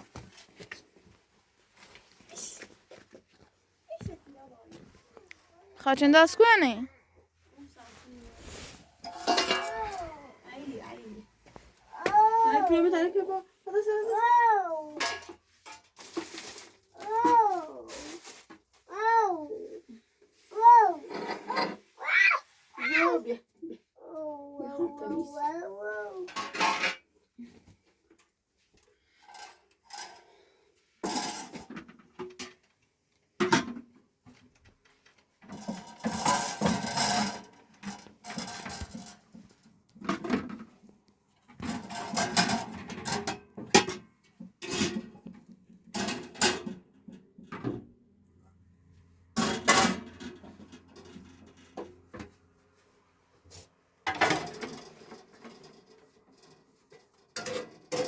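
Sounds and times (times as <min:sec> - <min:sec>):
dishes and pots clattering: 0:09.0 - 0:10.1, 0:15.0 - 0:16.3, 0:21.1 - 0:21.9, 0:26.3 - 0:27.1, 0:31.0 - 0:32.6, 0:33.4 - 0:33.9, 0:35.4 - 0:39.3, 0:41.6 - 0:47.8, 0:49.4 - 0:51.9, 0:54.1 - 0:58.0.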